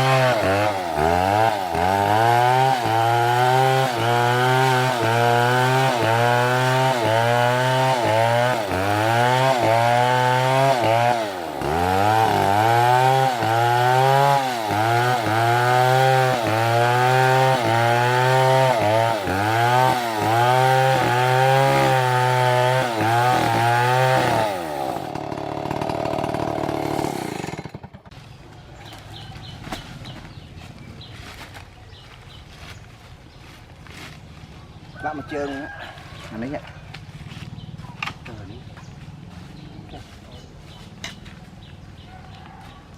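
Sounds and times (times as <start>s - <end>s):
chainsaw cutting wood: 0.0s - 31.7s.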